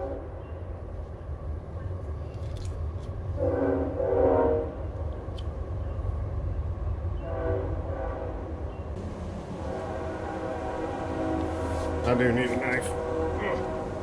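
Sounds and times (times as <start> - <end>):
train horn blowing: 0.0 - 0.4, 3.4 - 4.9, 7.2 - 14.0
low rumble of passing train: 0.0 - 14.0.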